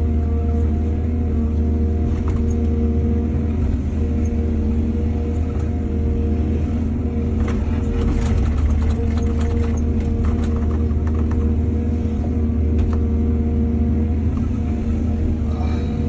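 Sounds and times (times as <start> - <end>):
heavy diesel engine running: 0.0 - 16.0
sharp clicks and knocks: 7.4 - 11.5.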